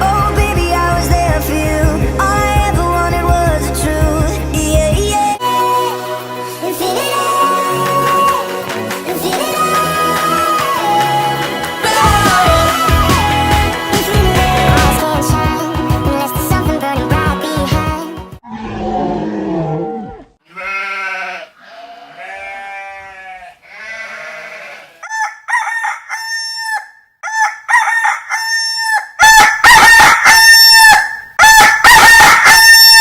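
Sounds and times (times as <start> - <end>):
song music: 0.0 - 18.4
farm fowl calling: 20.5 - 33.0.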